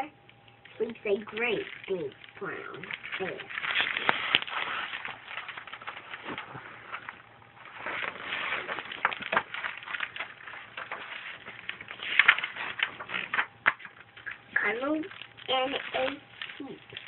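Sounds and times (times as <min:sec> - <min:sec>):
book pages rustling: 0:00.8 - 0:17.0.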